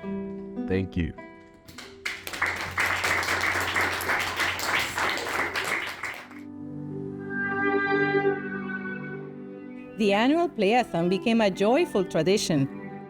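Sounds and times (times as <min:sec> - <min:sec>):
sustained instrumental music: 0:01.2 - 0:13.0
audience applauding: 0:01.7 - 0:06.4.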